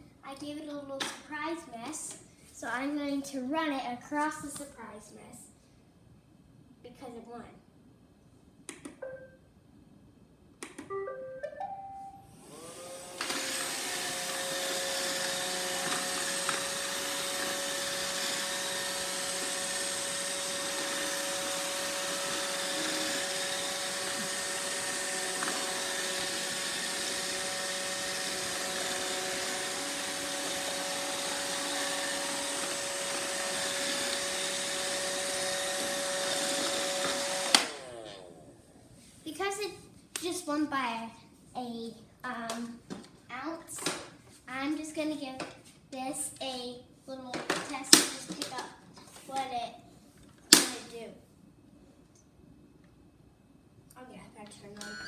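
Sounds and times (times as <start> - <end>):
robot vacuum motor humming: 12.4 - 38.6.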